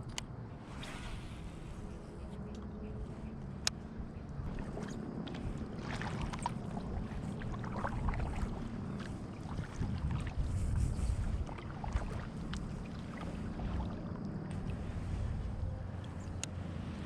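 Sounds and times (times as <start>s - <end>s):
low rumble: 0.4s - 17.0s
paddle splashing in water: 4.4s - 17.0s
water trickling: 4.5s - 15.1s.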